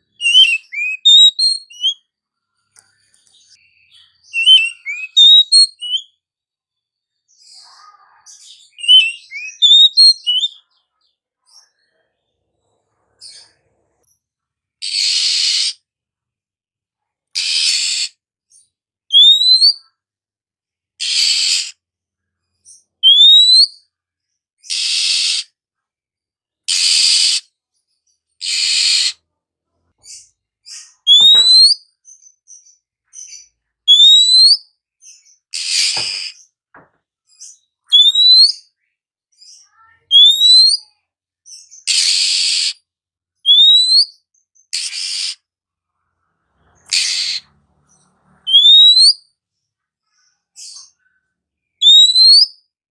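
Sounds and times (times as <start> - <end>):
bird calling with rasps and whistles: 0.0 - 2.1, 2.8 - 6.2, 7.3 - 10.8, 14.8 - 15.8, 17.4 - 18.2, 19.1 - 19.9, 21.0 - 21.8, 22.6 - 23.9, 24.6 - 25.6, 26.7 - 29.2, 30.0 - 36.6, 37.3 - 45.5, 46.7 - 47.6, 48.4 - 49.3, 50.5 - 52.7.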